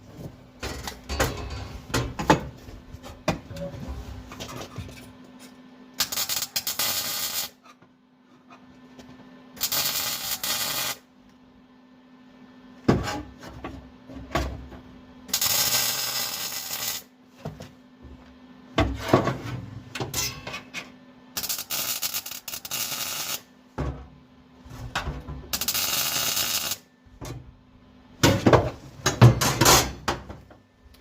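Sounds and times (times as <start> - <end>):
welder arc hissing: 6.0 - 7.6, 9.6 - 11.0, 15.3 - 17.1, 21.4 - 23.5, 25.5 - 26.8.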